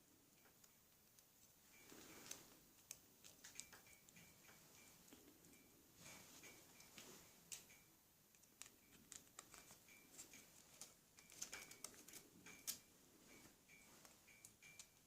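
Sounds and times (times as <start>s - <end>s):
faint regular ticking: 0.0s - 15.0s
small metal parts clicking: 7.5s - 12.9s.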